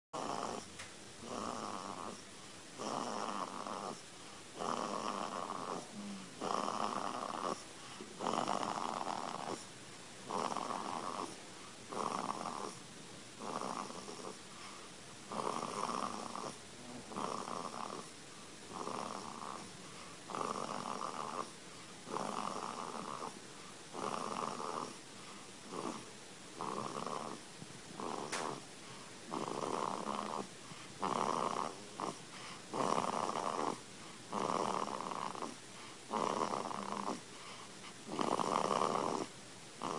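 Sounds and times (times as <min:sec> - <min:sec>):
baby snoring: 0:00.2 - 0:12.8, 0:13.4 - 0:18.1, 0:18.7 - 0:39.9.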